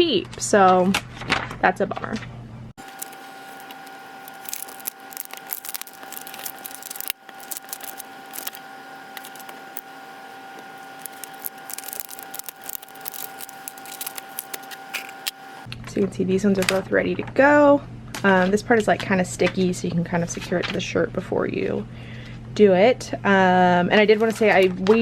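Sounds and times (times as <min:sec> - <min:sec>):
steady electrical whine: 0:02.8 - 0:15.7.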